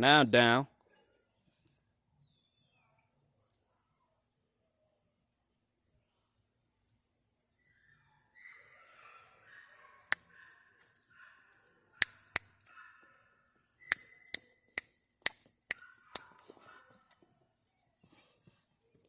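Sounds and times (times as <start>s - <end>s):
finger snaps: 13.9s - 16.3s.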